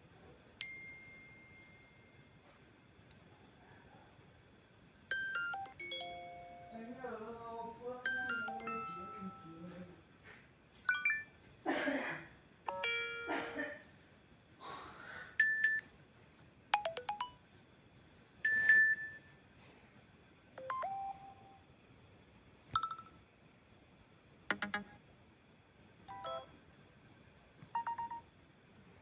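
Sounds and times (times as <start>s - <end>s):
electronic chimes and beeps: 10.9s - 11.3s.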